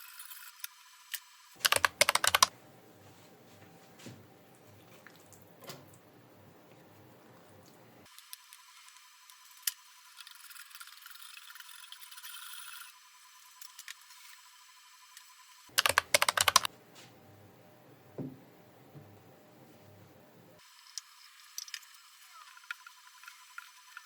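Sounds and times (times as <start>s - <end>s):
sharp clicks: 1.6s - 2.5s, 15.8s - 16.7s
knock: 18.2s - 18.4s.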